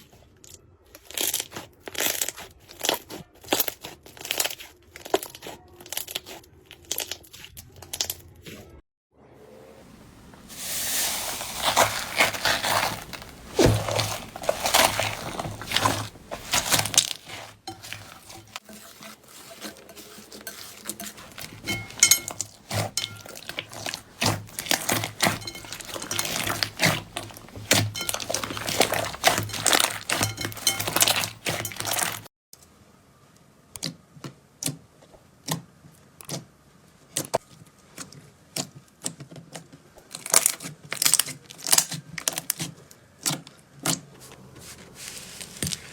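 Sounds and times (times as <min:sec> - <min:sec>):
slime crackling and popping: 0:01.0 - 0:08.2, 0:10.6 - 0:18.5, 0:21.7 - 0:32.2.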